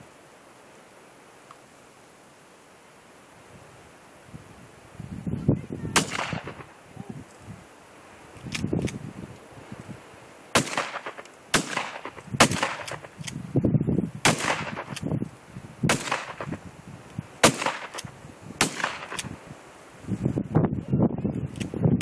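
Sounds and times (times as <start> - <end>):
wind rumbling on microphone: 3.4 - 22.0
shotgun shots echoing: 6.0 - 6.7, 10.5 - 13.2, 14.2 - 15.0, 15.9 - 16.6, 17.4 - 19.3.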